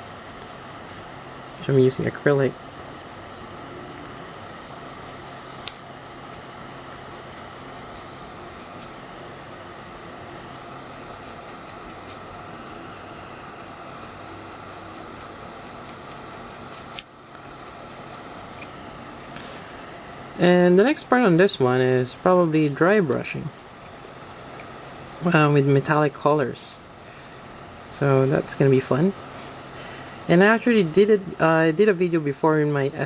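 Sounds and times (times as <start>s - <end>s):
paintbrush brushing scratches: 0.0s - 18.7s, 22.5s - 33.0s
steady background hum: 0.0s - 33.0s.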